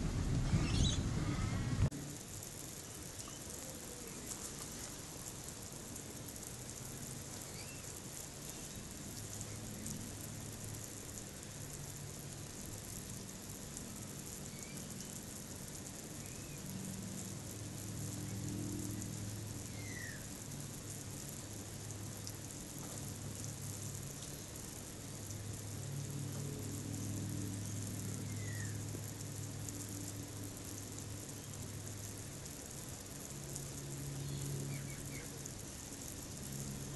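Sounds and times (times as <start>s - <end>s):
low hum: 0.0s - 2.6s
hose spraying water: 0.0s - 36.9s
bird chirping: 0.5s - 1.6s.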